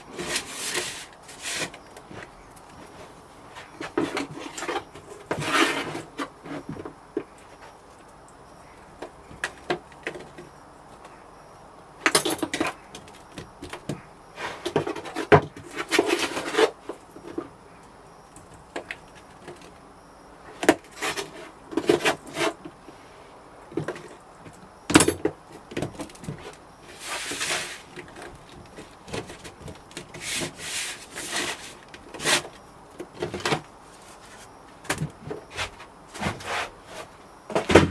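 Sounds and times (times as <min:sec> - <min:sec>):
hand scraping and rubbing: 0:00.1 - 0:06.7, 0:26.0 - 0:34.6, 0:35.3 - 0:37.8.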